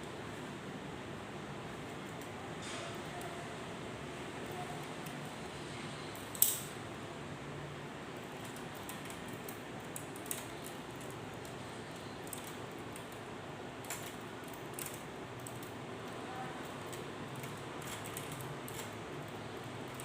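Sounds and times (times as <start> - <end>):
typewriter parts clicking: 6.2 - 6.7, 8.3 - 13.2, 13.8 - 20.0.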